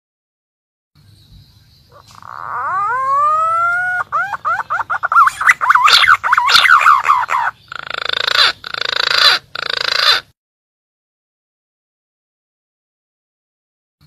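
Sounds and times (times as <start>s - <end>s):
rough rasping bird notes: 1.8s - 10.3s
pigeon warbling whistled notes: 1.9s - 10.3s.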